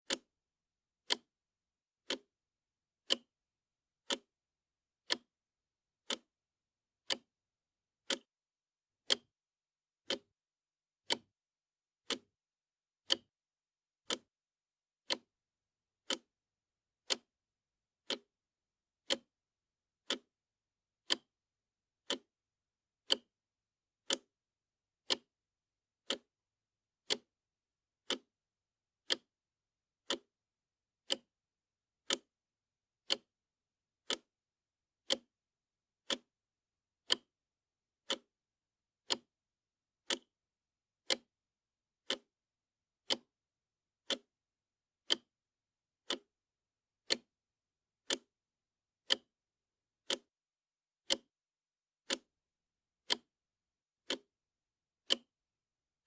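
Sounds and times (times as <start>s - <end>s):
wall clock ticking: 0.0s - 0.3s, 1.0s - 1.3s, 2.0s - 2.3s, 3.0s - 3.3s, 4.0s - 4.3s, 5.0s - 5.3s, 6.0s - 6.3s, 7.0s - 7.3s, 8.0s - 8.3s, 9.0s - 9.3s, 10.0s - 10.3s, 11.0s - 11.3s, 12.0s - 12.3s, 13.0s - 13.3s, 14.0s - 14.3s, 15.0s - 15.3s, 16.0s - 16.3s, 17.0s - 17.3s, 18.0s - 18.3s, 19.0s - 19.3s, 20.0s - 20.3s, 21.0s - 21.3s, 22.0s - 22.3s, 23.0s - 23.3s, 24.0s - 24.3s, 25.0s - 25.3s, 26.0s - 26.3s, 27.0s - 27.3s, 28.0s - 28.3s, 29.0s - 29.3s, 30.0s - 30.3s, 31.0s - 31.3s, 32.0s - 32.3s, 33.0s - 33.3s, 34.0s - 34.3s, 35.0s - 35.3s, 36.0s - 36.3s, 37.0s - 37.3s, 38.0s - 38.3s, 39.0s - 39.3s, 40.0s - 40.3s, 41.0s - 41.3s, 42.0s - 42.3s, 43.0s - 43.4s, 44.0s - 44.3s, 45.0s - 45.3s, 46.0s - 46.3s, 47.0s - 47.4s, 48.0s - 48.3s, 49.0s - 49.3s, 50.0s - 50.3s, 51.0s - 51.3s, 52.0s - 52.3s, 53.0s - 53.3s, 54.0s - 54.3s, 55.0s - 55.3s.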